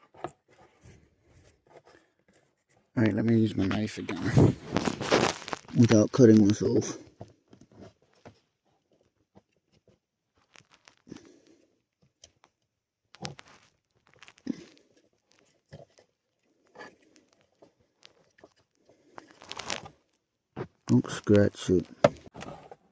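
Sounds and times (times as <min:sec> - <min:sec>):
knife scraping plastic: 0:00.0 - 0:03.0, 0:04.3 - 0:11.5.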